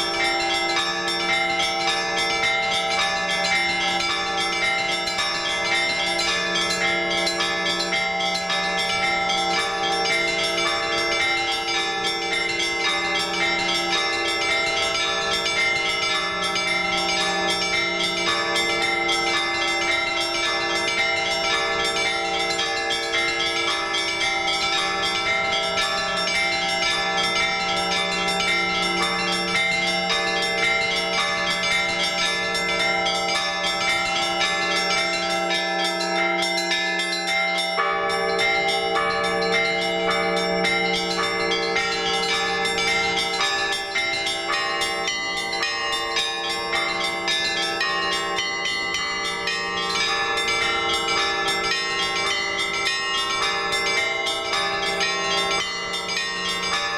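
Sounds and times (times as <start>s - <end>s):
hum of large bells: 0.0s - 56.9s
small church bells ringing: 0.0s - 56.9s.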